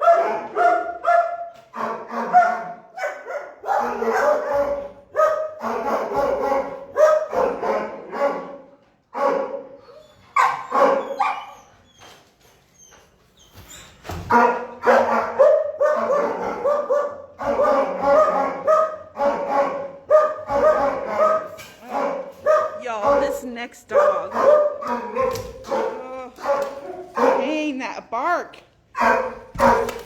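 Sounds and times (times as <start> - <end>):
dogs barking: 0.0 - 11.7, 14.3 - 27.7, 28.8 - 30.0.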